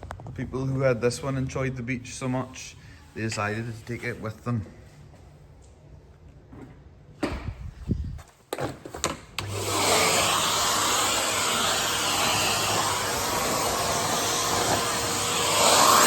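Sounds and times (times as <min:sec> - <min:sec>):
vacuum cleaner running: 0:09.4 - 0:16.0.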